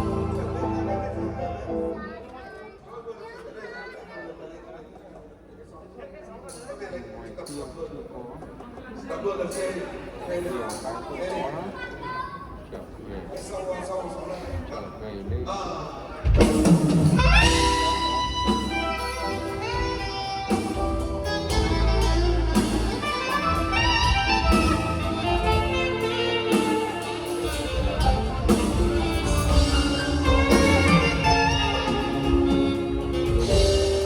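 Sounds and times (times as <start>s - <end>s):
steady bass: 0.0s - 1.8s, 27.4s - 34.0s
saxophones playing duet: 0.0s - 2.0s, 17.2s - 34.0s
live band: 0.0s - 2.6s, 16.2s - 34.0s.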